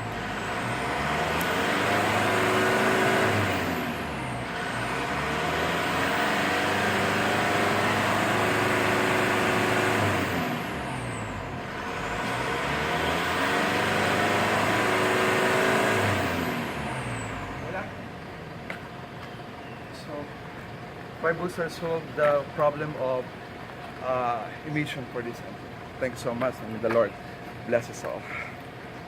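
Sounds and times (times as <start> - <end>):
high turbo whine: 0.0 - 22.0
diesel engine revving: 0.0 - 29.0.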